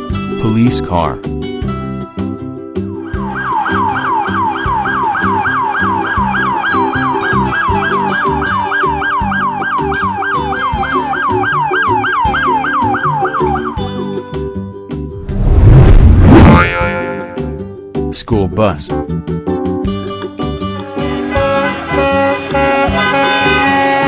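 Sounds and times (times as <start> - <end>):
backing music: 1.4 - 18.3, 18.9 - 24.0
police siren yelp: 3.0 - 14.0.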